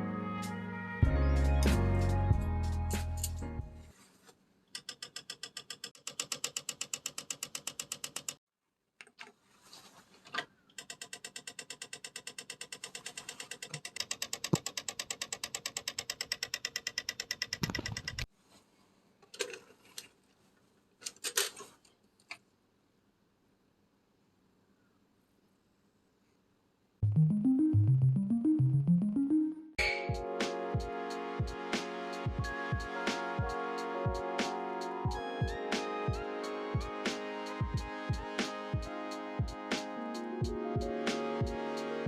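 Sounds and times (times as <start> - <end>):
player mechanism rattling clicks: 4.7 - 8.4, 10.7 - 18.2.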